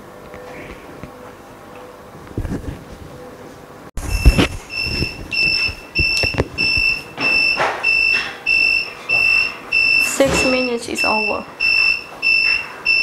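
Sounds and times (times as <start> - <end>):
machine buzzer beeping: 4.0 - 13.0.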